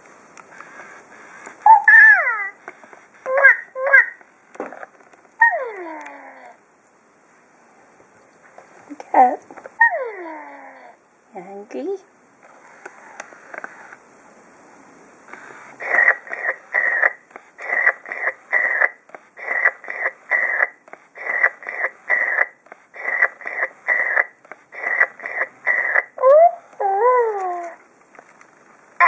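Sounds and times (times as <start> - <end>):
toy monkey giggling: 1.6 - 2.6, 3.2 - 4.2, 5.4 - 6.6, 15.8 - 27.8.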